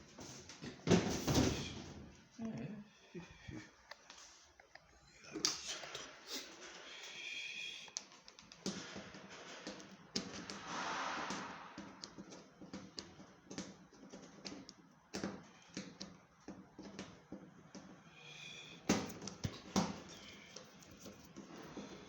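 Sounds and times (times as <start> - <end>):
short rush of hiss: 10.5 - 12.2.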